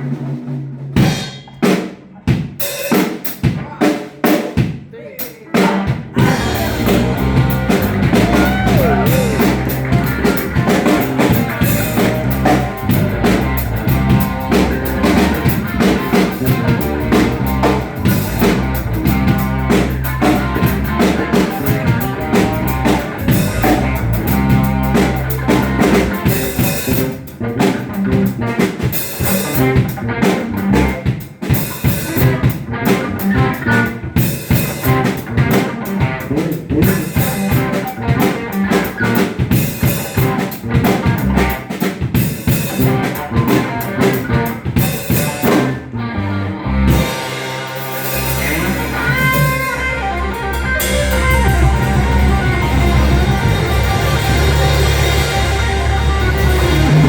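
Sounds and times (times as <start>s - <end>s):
drum kit: 0.0s - 46.0s, 46.7s - 57.0s
electric guitar bending notes: 5.8s - 57.0s
repeating bass line: 6.2s - 28.6s, 40.0s - 41.7s, 42.6s - 57.0s.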